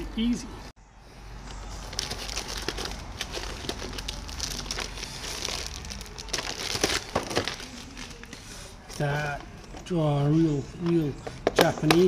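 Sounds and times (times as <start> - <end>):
crinkling and rustling: 1.5 - 10.0.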